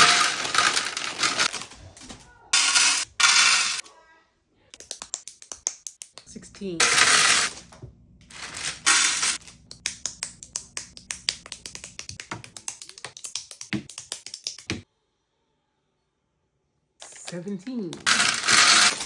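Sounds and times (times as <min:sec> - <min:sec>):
plastic bricks clicking: 0:00.0 - 0:03.8, 0:18.0 - 0:19.0
plastic pieces rustling: 0:00.0 - 0:03.8, 0:06.8 - 0:09.7, 0:18.0 - 0:19.0.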